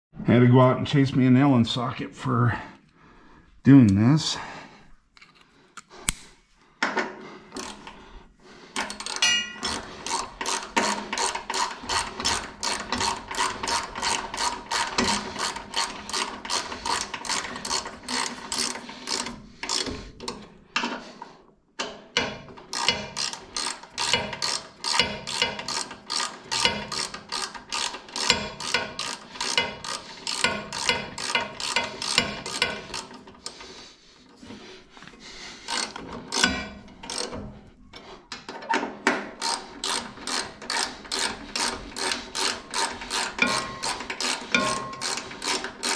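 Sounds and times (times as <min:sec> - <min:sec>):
ratchet wrench clicking: 0:08.8 - 0:20.0, 0:22.7 - 0:33.2, 0:35.7 - 0:37.4, 0:39.4 - 0:45.9.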